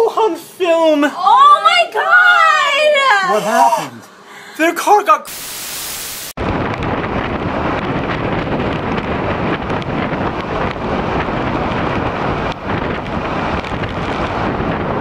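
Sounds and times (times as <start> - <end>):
strong wind buffeting microphone: 6.4 - 15.0.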